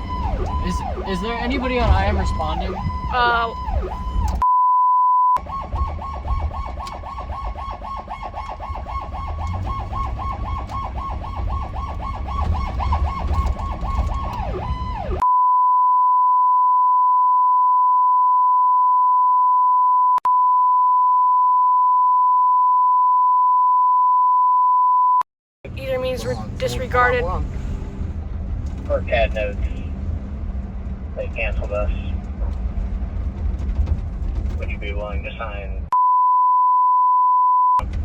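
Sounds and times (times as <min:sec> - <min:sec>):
vehicle road noise: 0:00.0 - 0:04.4, 0:05.4 - 0:15.2, 0:25.6 - 0:35.9, 0:37.8 - 0:38.0
warbling electronic emergency siren: 0:00.0 - 0:04.5, 0:05.4 - 0:15.3
high pure beep tone: 0:04.4 - 0:05.4, 0:15.2 - 0:25.3, 0:35.9 - 0:37.8.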